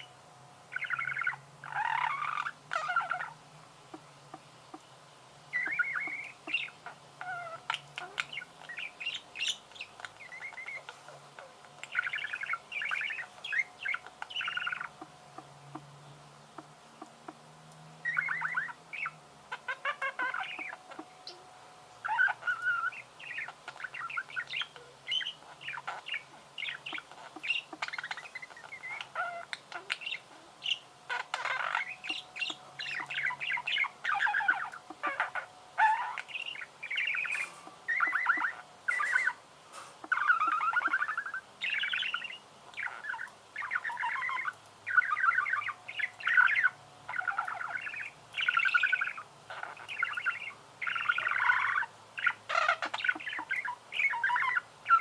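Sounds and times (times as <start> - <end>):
budgerigars chirping and twittering: 0.7 - 4.9, 5.5 - 17.4, 18.0 - 55.0.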